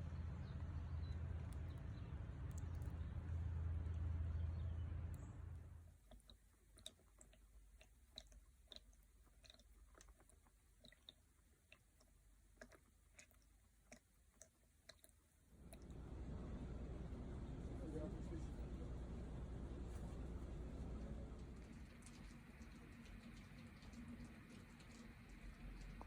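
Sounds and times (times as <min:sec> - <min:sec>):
water clicks and drips: 0:00.6 - 0:03.1, 0:05.1 - 0:16.1, 0:20.8 - 0:26.0.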